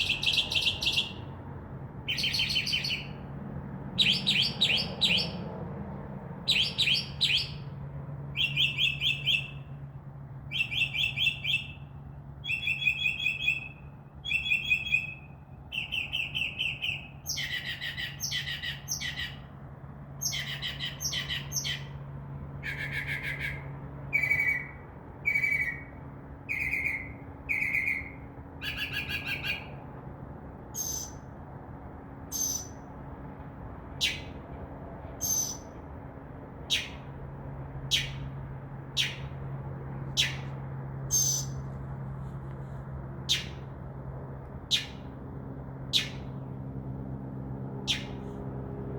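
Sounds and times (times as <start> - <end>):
mockingbird singing: 0.0 - 1.3, 2.1 - 3.3, 4.0 - 5.4, 6.5 - 7.7, 8.3 - 9.7, 10.5 - 19.5, 20.2 - 22.0, 22.6 - 29.8, 30.7 - 31.2, 32.3 - 32.8, 34.0 - 34.4, 35.2 - 35.8, 36.7 - 37.1, 37.9 - 38.3, 39.0 - 39.3, 40.2 - 40.5, 41.1 - 41.6, 43.3 - 43.6, 44.7 - 45.1, 45.9 - 46.4, 47.9 - 48.2.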